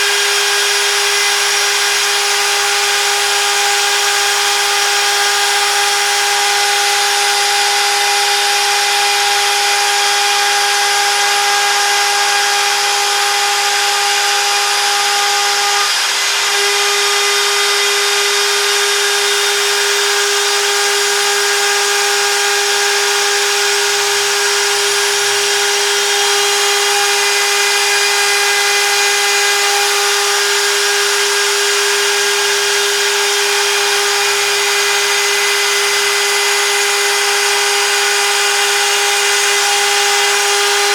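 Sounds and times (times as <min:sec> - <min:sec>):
router spindle whine: 0:00.0 - 0:40.9.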